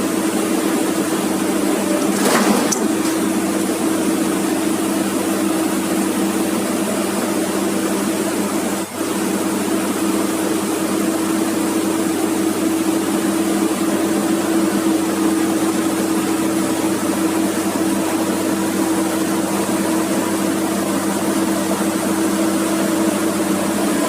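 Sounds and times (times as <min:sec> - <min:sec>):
excavator diesel engine running: 0:00.0 - 0:06.8, 0:20.1 - 0:24.0.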